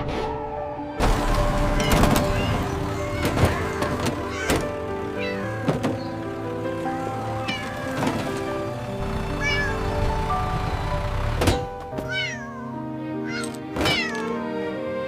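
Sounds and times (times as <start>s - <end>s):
background music: 0.0s - 15.0s
cartoon cat meowing: 1.7s - 5.8s, 9.4s - 9.8s, 12.0s - 14.5s.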